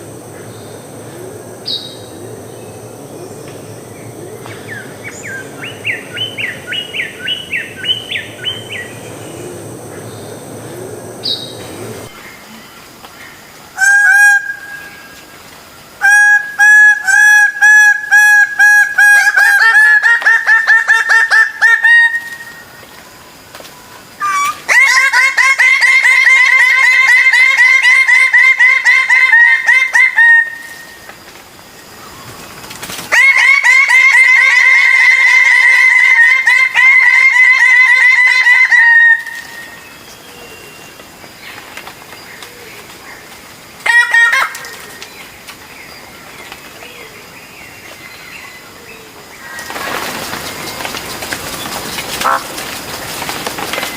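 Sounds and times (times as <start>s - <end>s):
bird honking calls: 52.2s - 52.5s.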